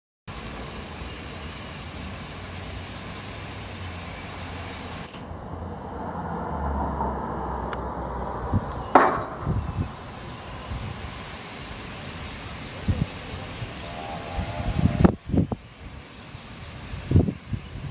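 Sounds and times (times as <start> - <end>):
outdoor background noise: 0.3 - 17.9
low thumps: 7.8 - 10.9
sharp knock: 8.9 - 9.9.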